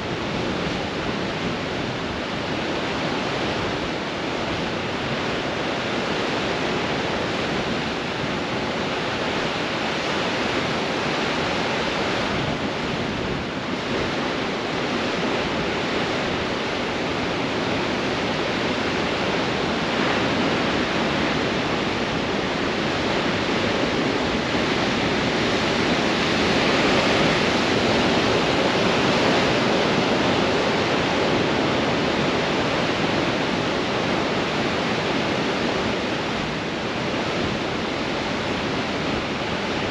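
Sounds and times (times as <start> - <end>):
strong wind: 0.0 - 39.9.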